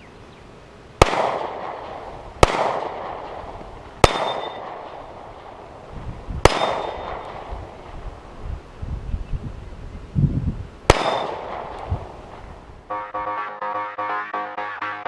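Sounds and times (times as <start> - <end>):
handgun shots with echo: 1.0 - 5.6, 6.5 - 7.6, 10.9 - 12.0.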